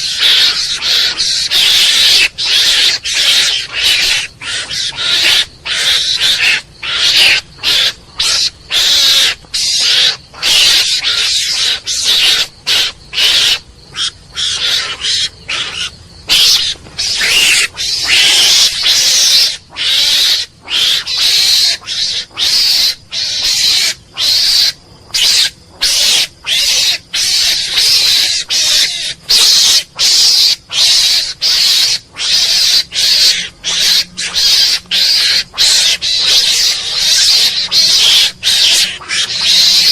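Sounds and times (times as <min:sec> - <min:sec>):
mongoose harsh hissing calls: 0:00.0 - 0:39.9.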